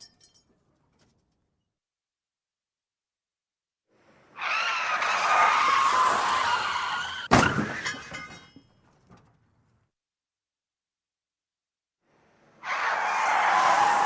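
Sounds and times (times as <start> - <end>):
tyres screeching: 4.4 - 8.1
glass breaking: 7.3 - 9.0
debris clattering: 7.3 - 9.8.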